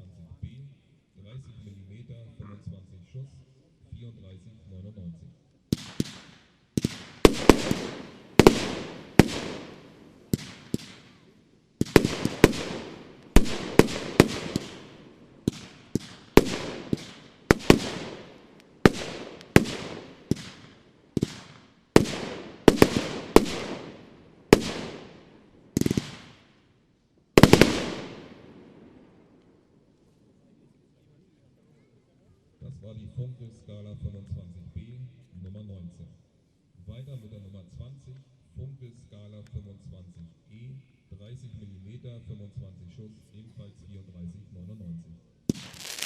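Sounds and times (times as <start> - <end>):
firework bangs: 5.7 - 26.5, 27.4 - 29.2, 45.5 - 46.0.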